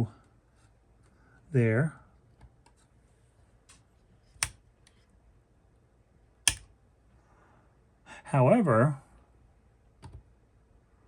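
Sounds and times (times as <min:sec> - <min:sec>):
sharp metal clicks: 0:06.5 - 0:06.7.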